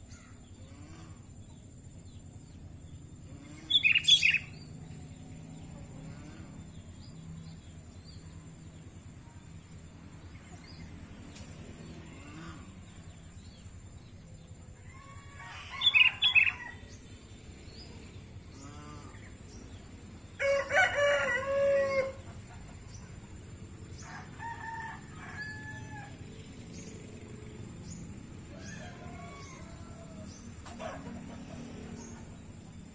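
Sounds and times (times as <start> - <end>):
small birds chirping: 1.4 - 8.3
rooster crowing: 14.8 - 17.0, 20.4 - 22.4, 24.0 - 26.3, 28.5 - 31.2.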